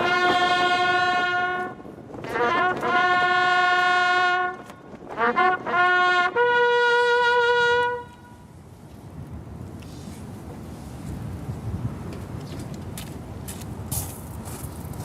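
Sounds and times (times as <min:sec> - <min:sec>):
bugle call: 0:00.0 - 0:08.4.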